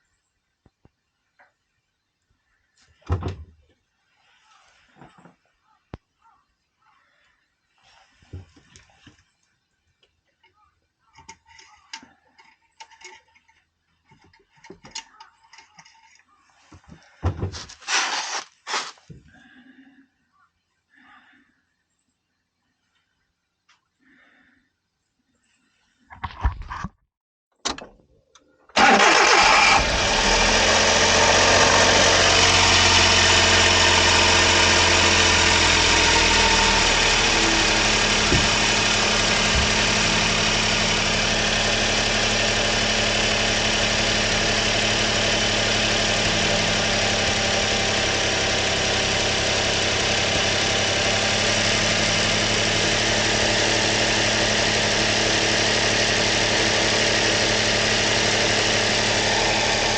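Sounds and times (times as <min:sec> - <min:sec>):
truck engine starting and idling: 0:28.7 - 0:59.9.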